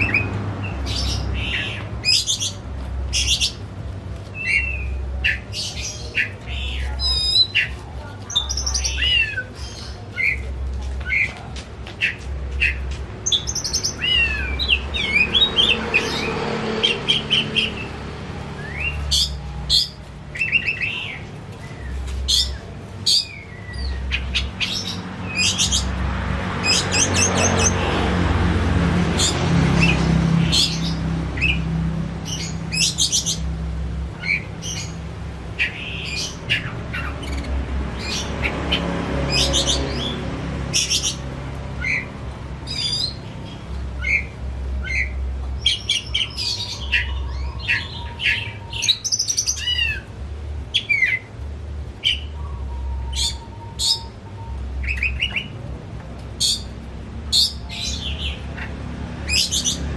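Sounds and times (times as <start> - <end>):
bird singing whistles and trills: 52.0 - 55.5.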